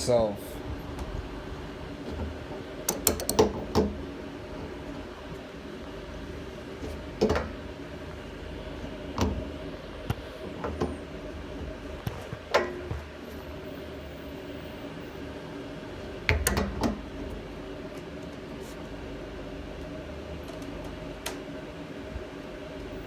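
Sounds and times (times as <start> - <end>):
steady low hum: 0.0 - 23.0
knocks and clicks on fittings: 2.9 - 4.0.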